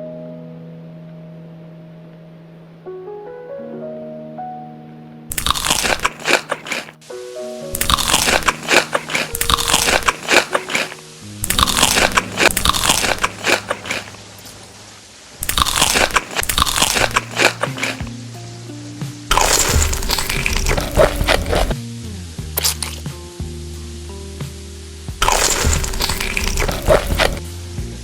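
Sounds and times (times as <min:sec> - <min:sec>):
soft piano music: 0:00.0 - 0:05.4, 0:07.0 - 0:08.7, 0:18.1 - 0:19.3
crunchy food being chewed: 0:05.3 - 0:07.0, 0:07.7 - 0:14.6, 0:15.4 - 0:18.2, 0:19.3 - 0:21.8, 0:22.6 - 0:23.0, 0:25.2 - 0:27.4.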